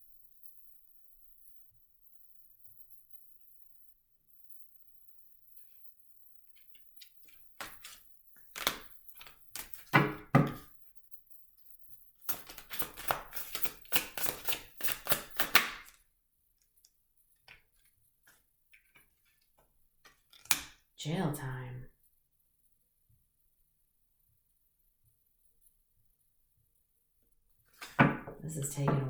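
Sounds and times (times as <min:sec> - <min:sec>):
cards clicking on a table: 0:07.0 - 0:10.6, 0:12.3 - 0:16.0, 0:20.3 - 0:20.8, 0:27.8 - 0:28.3
deck of cards shuffling: 0:07.0 - 0:10.6, 0:12.3 - 0:16.0, 0:27.8 - 0:29.0
heavy thuds on a table: 0:10.0 - 0:10.6, 0:27.8 - 0:29.0.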